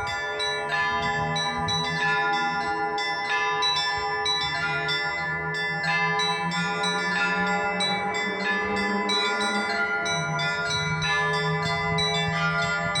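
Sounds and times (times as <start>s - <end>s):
high church bells pealing: 0.0s - 13.0s
low bell tone: 0.0s - 13.0s.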